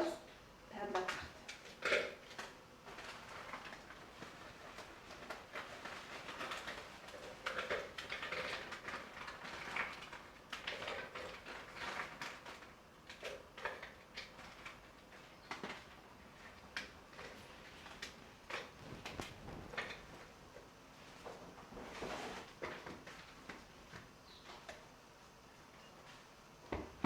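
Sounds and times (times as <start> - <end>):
biscuits being crushed: 1.5 - 20.6.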